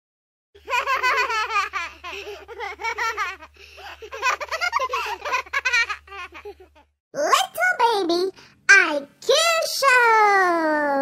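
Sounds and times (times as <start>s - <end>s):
small child laughing: 0.6s - 6.9s.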